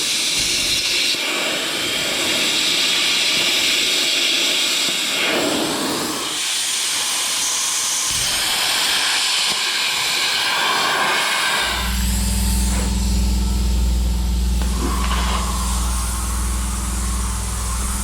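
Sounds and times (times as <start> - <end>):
steady hiss: 0.0 - 13.2, 14.4 - 18.0
machine humming: 11.5 - 18.0.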